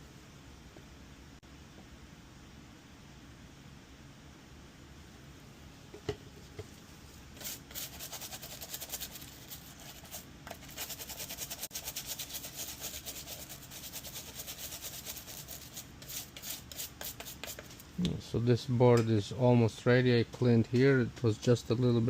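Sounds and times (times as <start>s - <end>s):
circuit board being scrubbed: 7.4s - 17.7s.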